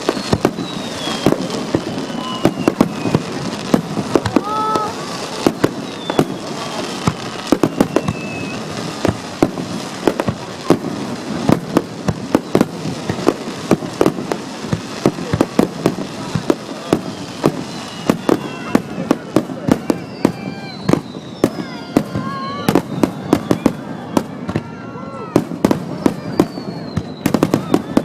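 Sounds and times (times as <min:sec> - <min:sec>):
faint falling whistle: 0:00.0 - 0:03.2, 0:05.8 - 0:06.8, 0:07.5 - 0:08.7, 0:16.9 - 0:18.9, 0:19.8 - 0:25.2, 0:26.0 - 0:28.0
fireworks bangs: 0:00.0 - 0:28.0.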